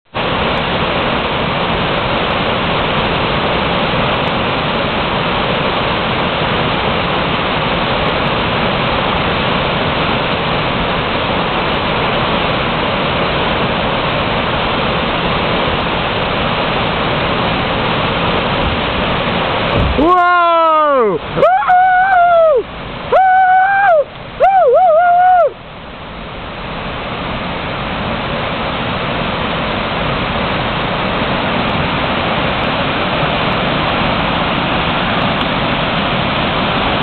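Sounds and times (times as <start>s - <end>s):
waterfall pouring: 0.1s - 37.0s.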